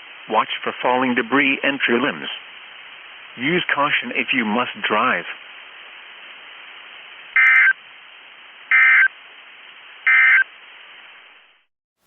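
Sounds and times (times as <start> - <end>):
radio hiss: 0.0 - 11.7
buzzing digital data bursts: 7.4 - 7.8.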